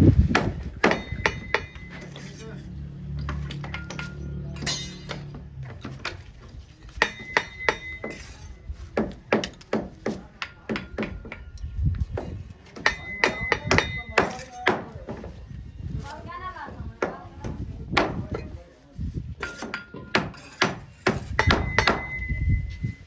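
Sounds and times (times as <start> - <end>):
trowel tapping on brick: 19.4 - 22.2.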